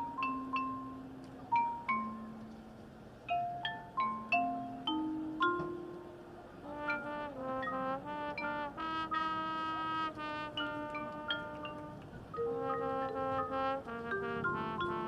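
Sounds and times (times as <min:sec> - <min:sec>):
mallet percussion notes: 0:00.0 - 0:15.0
marching band brass chords: 0:06.6 - 0:15.0.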